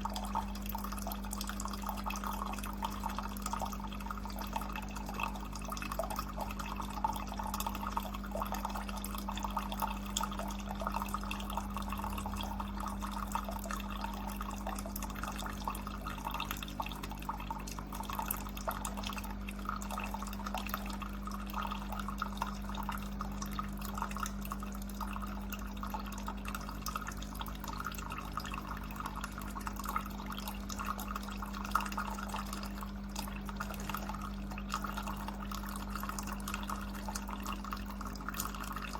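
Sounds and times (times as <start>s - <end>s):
coffee maker low hum: 0.0s - 38.9s
water dripping and trickling: 0.0s - 38.9s.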